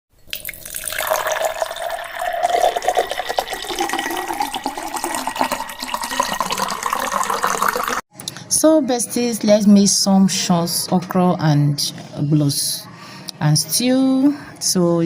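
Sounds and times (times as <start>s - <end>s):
tap water filling a container: 0.3s - 8.0s.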